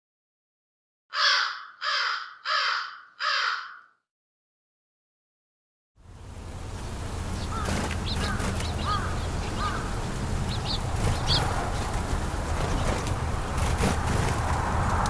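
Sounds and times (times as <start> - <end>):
chirping bird calls: 1.2 - 4.0, 7.3 - 13.8.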